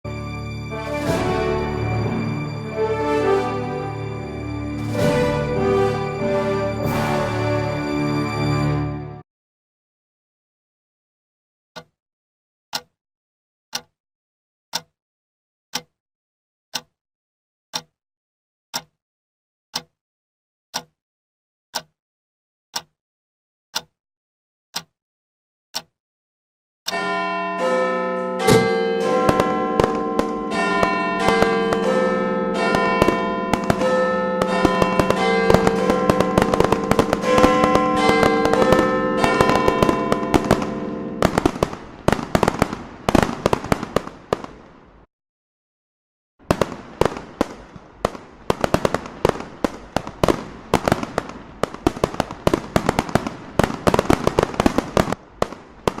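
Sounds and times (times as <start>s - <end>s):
bells ringing: 0.1s - 9.0s, 26.9s - 42.3s
fireworks crackling and banging: 0.7s - 4.1s, 4.7s - 8.4s, 28.4s - 45.0s, 46.4s - 56.0s.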